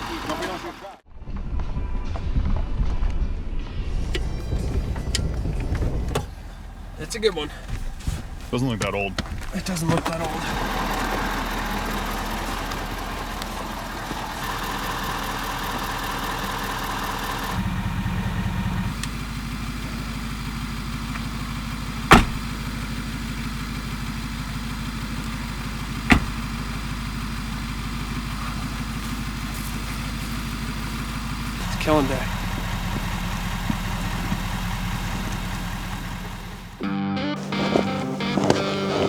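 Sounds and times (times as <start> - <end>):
vehicle engine idling: 0.0 - 1.0, 3.9 - 39.0
short sharp knocks: 22.1 - 22.5, 26.1 - 26.5.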